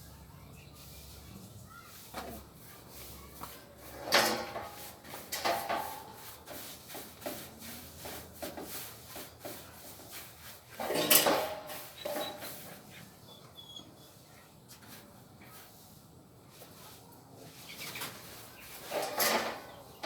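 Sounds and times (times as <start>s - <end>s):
wooden knocks and scrapes: 3.4s - 12.8s.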